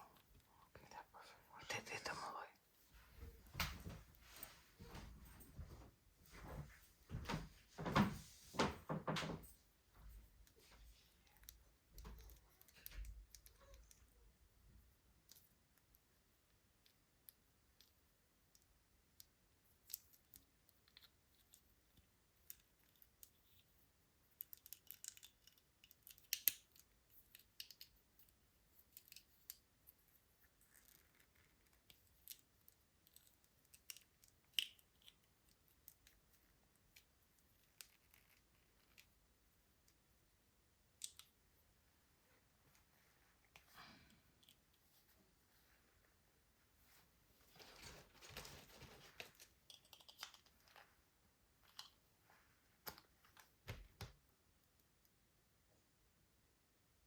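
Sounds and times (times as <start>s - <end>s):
toy packaging clicks and crinkles: 48.3s - 50.8s.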